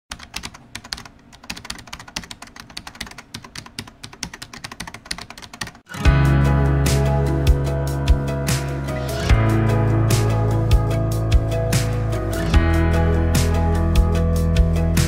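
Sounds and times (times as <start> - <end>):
rapid irregular clicking: 0.1 - 5.9
music: 5.9 - 15.0.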